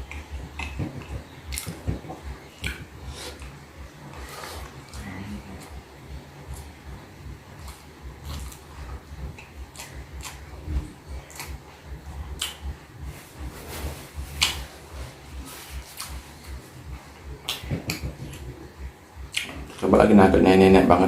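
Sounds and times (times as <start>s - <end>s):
chewing with lip smacks: 0.0s - 5.8s, 7.6s - 13.5s, 19.3s - 19.9s
low rumble: 0.0s - 20.8s.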